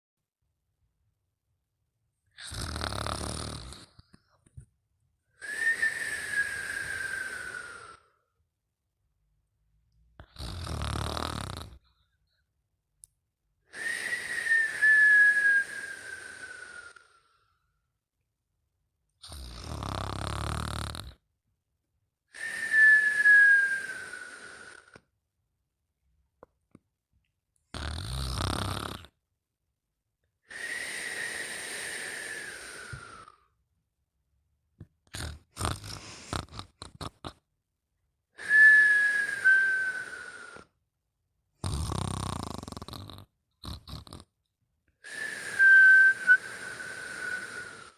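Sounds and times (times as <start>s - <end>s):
low rattling snore: 2.4s - 4.0s, 10.2s - 11.8s, 19.2s - 21.2s, 27.7s - 29.2s, 35.1s - 37.4s, 41.6s - 44.3s
whistling breath: 5.3s - 8.4s, 13.7s - 17.7s, 22.3s - 25.1s, 30.4s - 33.6s, 38.4s - 40.8s, 45.0s - 47.9s
snuffles and clicks: 34.8s - 37.4s.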